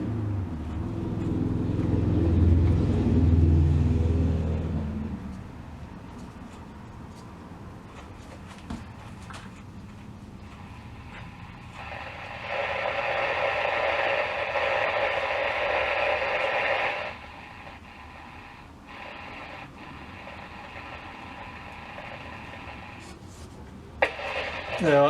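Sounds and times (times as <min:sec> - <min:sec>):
radio static hiss: 0:10.4 - 0:23.3, 0:24.0 - 0:25.0.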